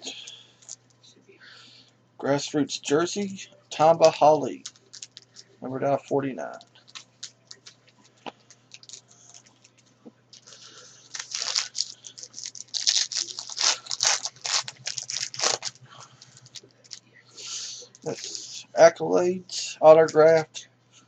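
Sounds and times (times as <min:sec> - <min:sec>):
card pack wrapper crinkling: 0:04.0 - 0:05.5, 0:06.4 - 0:09.8, 0:10.4 - 0:17.0
cards clicking: 0:06.5 - 0:09.8.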